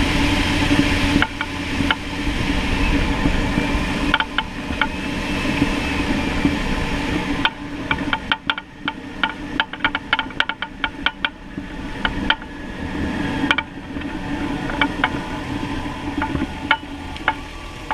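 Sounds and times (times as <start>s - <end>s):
running vehicle rumble: 0.0s - 17.9s
sharp knocking clicks: 4.1s - 5.0s, 7.4s - 11.4s, 12.0s - 12.5s.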